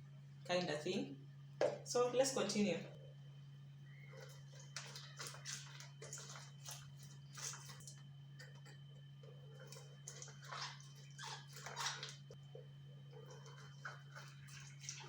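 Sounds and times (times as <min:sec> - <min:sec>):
steady low hum: 0:00.0 - 0:15.0
lemon squelching on juicer: 0:03.9 - 0:15.0.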